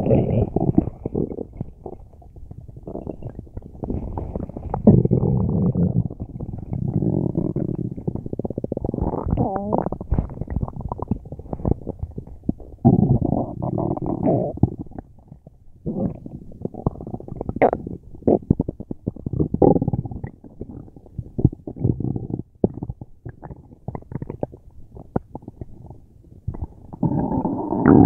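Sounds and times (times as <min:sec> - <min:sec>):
stomach gurgling: 0:00.0 - 0:28.0
crackling pops and clicks: 0:09.3 - 0:12.6.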